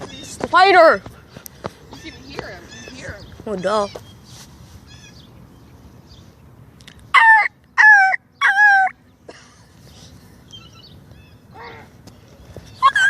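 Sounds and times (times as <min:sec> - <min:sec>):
jay calling: 0:07.2 - 0:09.0, 0:12.8 - 0:13.0.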